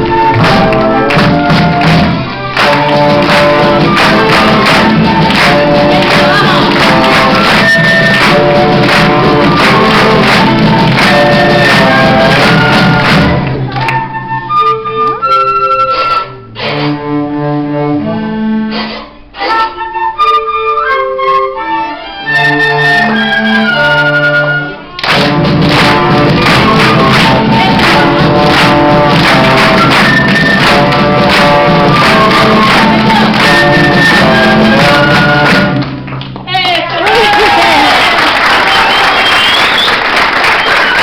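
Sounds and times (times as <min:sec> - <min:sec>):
children's choir singing: 0:00.0 - 0:13.7, 0:26.2 - 0:35.9
school orchestra playing: 0:00.0 - 0:36.1
held instrumental notes: 0:00.0 - 0:36.2.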